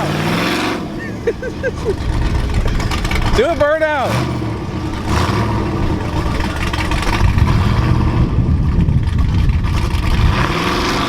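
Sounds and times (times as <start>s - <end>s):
water churning: 0.0s - 8.2s
truck engine revving: 0.0s - 11.0s.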